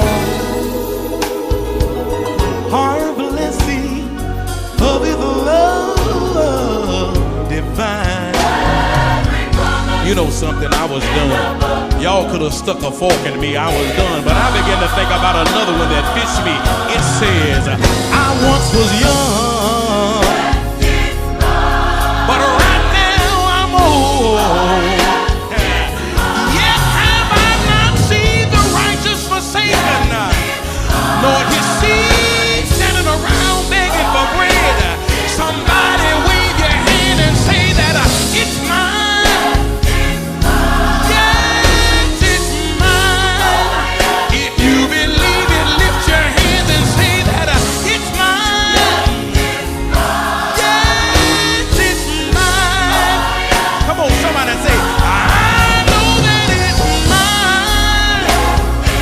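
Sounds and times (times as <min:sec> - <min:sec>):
background vocal harmony: 0:00.0 - 0:59.0
band with steady bass line: 0:00.0 - 0:59.0
lead voice singing: 0:00.0 - 0:59.0.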